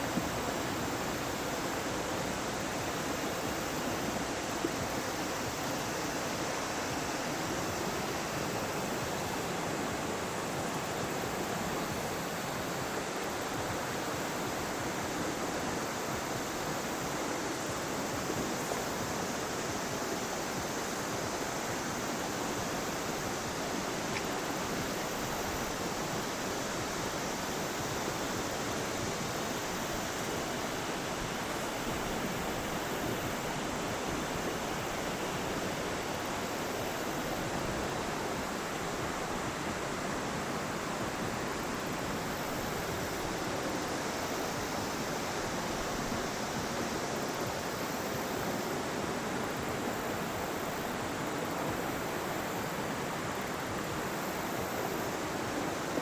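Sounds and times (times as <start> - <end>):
river water rushing over rocks: 0.0 - 56.0.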